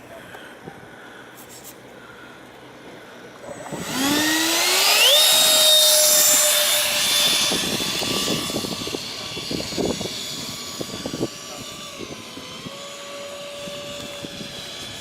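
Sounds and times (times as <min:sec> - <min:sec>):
electric fan whine spooling up: 0:03.4 - 0:15.0.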